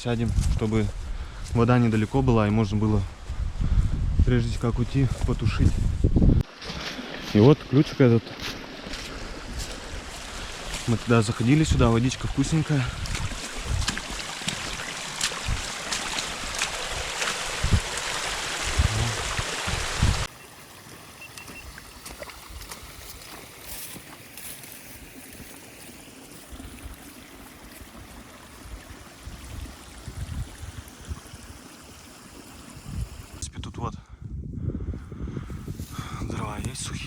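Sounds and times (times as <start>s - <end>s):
brook water rushing: 6.4s - 33.4s
distant water hiss: 6.5s - 33.4s.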